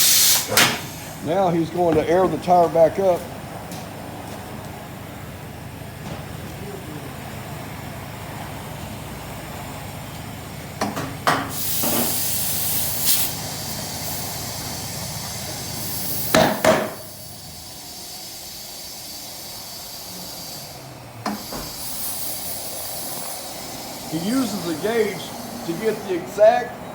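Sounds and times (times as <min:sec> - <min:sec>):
compressed air hissing: 0:00.0 - 0:01.8, 0:11.3 - 0:26.7.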